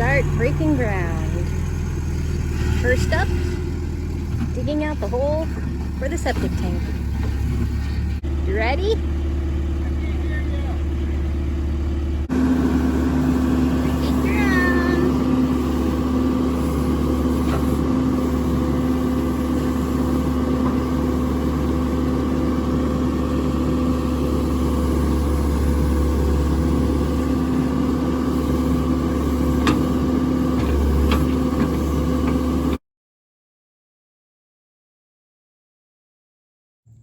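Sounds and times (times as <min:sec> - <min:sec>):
digging machine engine running: 0:00.0 - 0:32.8.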